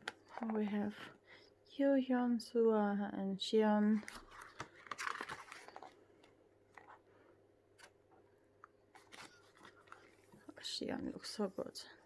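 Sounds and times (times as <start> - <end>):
glossy pages rustling: 0.0 - 0.8, 3.9 - 7.1, 8.6 - 10.7.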